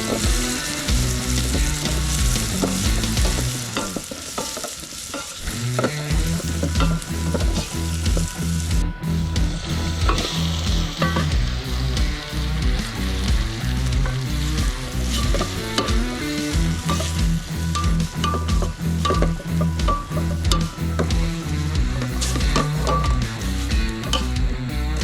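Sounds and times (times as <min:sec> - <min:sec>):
utensil scraping a pan: 0:00.0 - 0:08.4, 0:13.9 - 0:24.4
food sizzling in a pan: 0:00.0 - 0:25.0.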